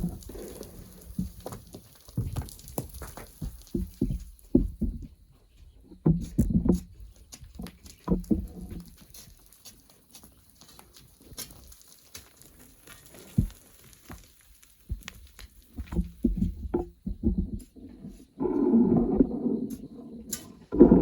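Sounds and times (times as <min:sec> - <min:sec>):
hand tools digging sand: 0:00.0 - 0:01.8
sand and grit pattering: 0:00.0 - 0:21.0.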